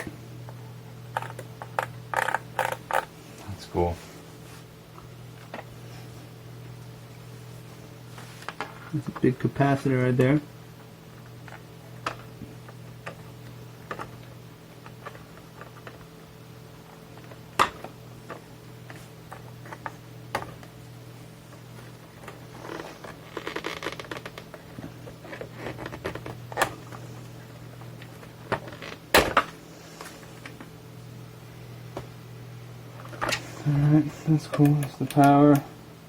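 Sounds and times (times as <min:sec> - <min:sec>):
scraping and rustling: 0:21.8 - 0:27.2
clicks and knocks of handling: 0:34.5 - 0:35.6.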